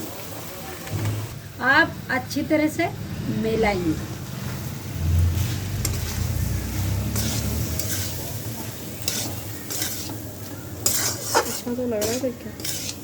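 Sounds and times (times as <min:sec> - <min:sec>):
food sizzling: 0:00.0 - 0:13.0
low rumble: 0:03.0 - 0:07.7
spatula scraping a pan: 0:05.3 - 0:13.0.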